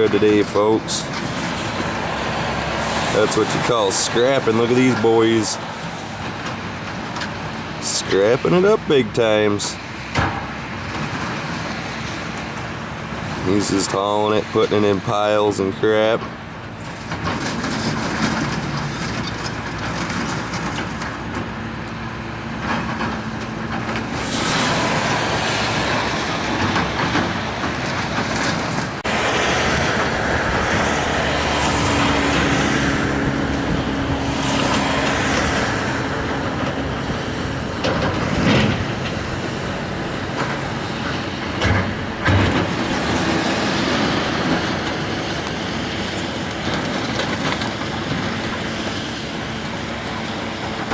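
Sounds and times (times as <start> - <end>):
diesel engine revving under load: 0.0 - 50.9
scrap metal clanking: 22.6 - 48.7.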